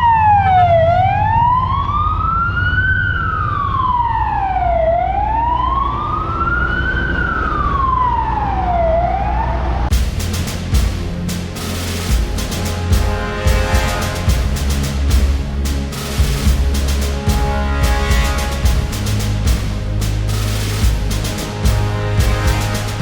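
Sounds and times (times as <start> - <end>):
emergency siren wailing: 0.0 - 9.9
low engine rumble: 9.5 - 23.0.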